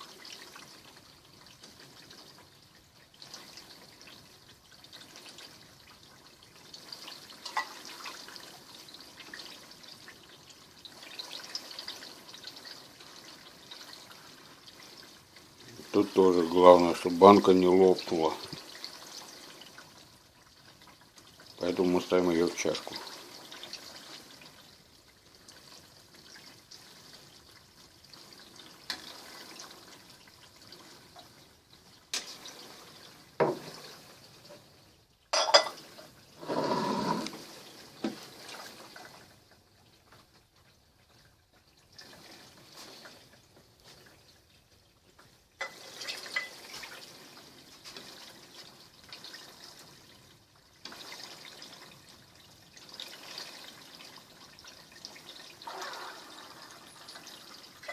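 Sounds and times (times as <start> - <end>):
liquid fat trickling and dripping: 0.0 - 57.9
glass clinks and knocks: 35.4 - 35.8.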